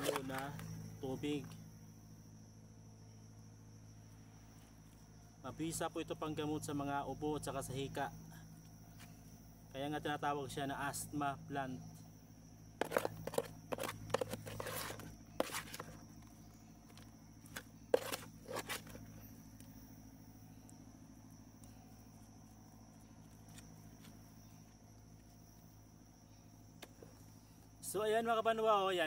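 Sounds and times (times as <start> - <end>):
steady low hum: 0.0 - 29.0
knocks and scrapes: 12.8 - 19.3.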